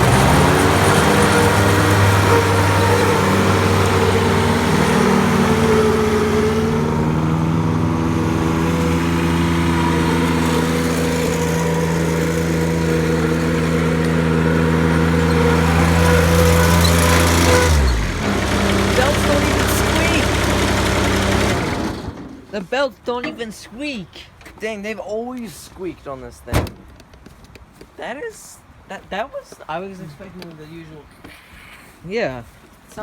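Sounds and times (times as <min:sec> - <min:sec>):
diesel mower engine running: 0:00.0 - 0:22.4.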